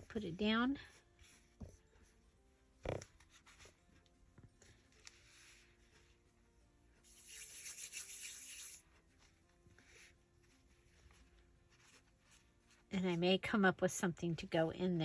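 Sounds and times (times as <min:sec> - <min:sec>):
faint background music: 0:00.0 - 0:15.0
hand rubbing over paper: 0:04.7 - 0:13.0.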